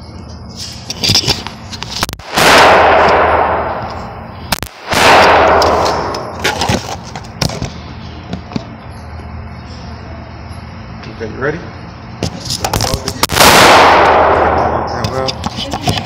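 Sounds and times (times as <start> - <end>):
gunshots with echo: 2.2 - 6.4, 13.2 - 15.0.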